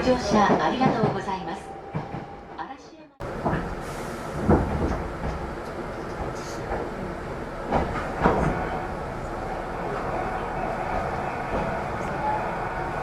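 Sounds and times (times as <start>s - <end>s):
train rumbling on track: 0.0s - 13.0s.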